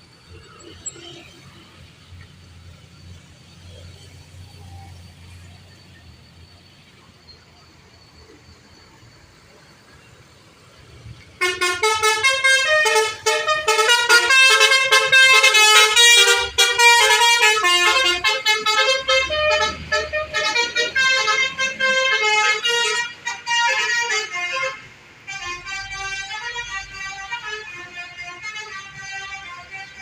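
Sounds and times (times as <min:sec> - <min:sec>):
bus horn playing a tune: 0:11.4 - 0:30.0.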